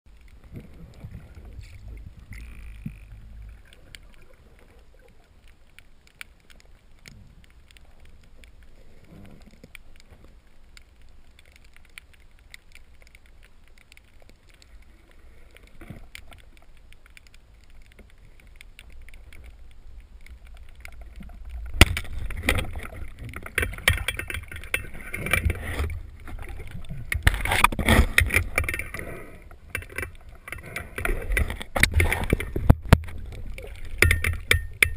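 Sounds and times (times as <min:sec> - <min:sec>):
crackling clicks: 0:00.1 - 0:34.9
low underwater rumble: 0:00.2 - 0:05.4
sharp crack: 0:20.3 - 0:34.9.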